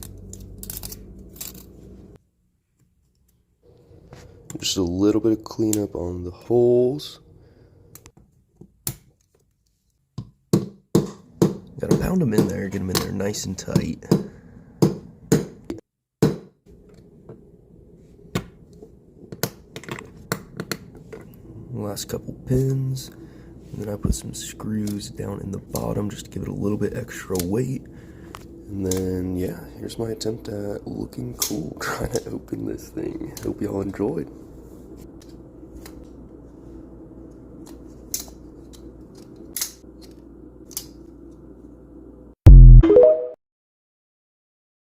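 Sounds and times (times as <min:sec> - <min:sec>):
steady low hum: 0:16.7 - 0:42.6.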